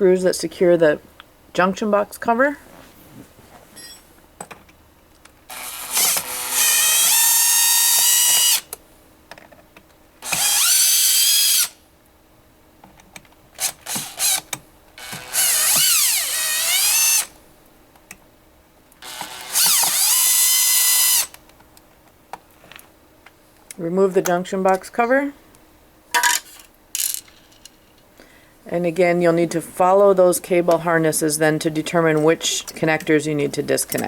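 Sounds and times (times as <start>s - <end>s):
power drill whining: 5.5s - 8.7s, 10.2s - 11.8s, 13.6s - 17.3s, 19.0s - 21.4s.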